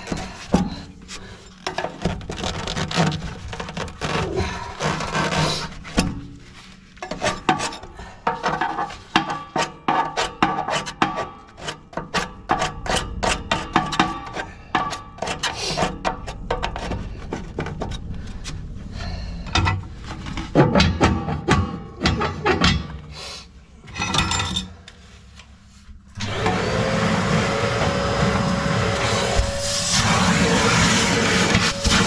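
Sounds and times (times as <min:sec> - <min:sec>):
metal and brick parts clinking: 0:23.8 - 0:25.0
motor whining: 0:26.2 - 0:32.0.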